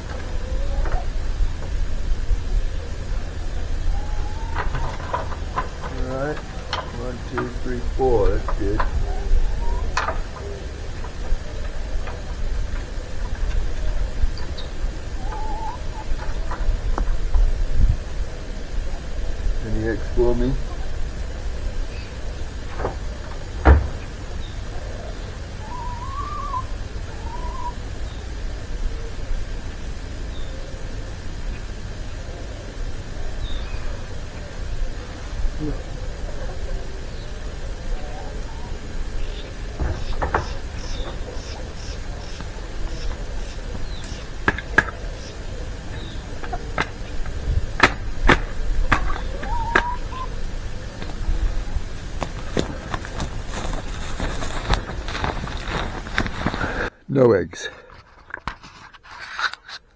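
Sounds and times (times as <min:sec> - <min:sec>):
hens calling: 0:00.0 - 0:29.8, 0:31.6 - 0:57.0
sharp knocks and clicks: 0:04.3 - 0:17.5, 0:22.1 - 0:24.8, 0:39.3 - 0:50.2.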